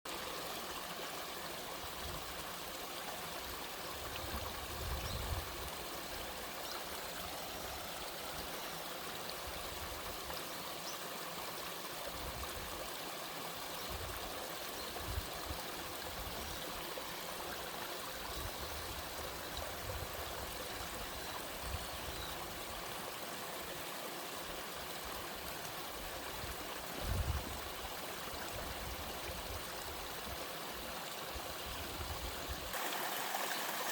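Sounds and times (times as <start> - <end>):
waterfall rushing over rock: 29.5 - 33.9.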